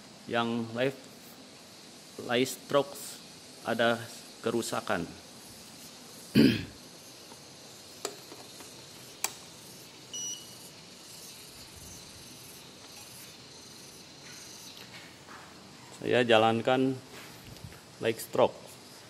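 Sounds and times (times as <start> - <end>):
faint background noise: 0.0 - 19.0
sharp clicks: 8.0 - 9.5
robot vacuum electronic beep: 10.1 - 10.6.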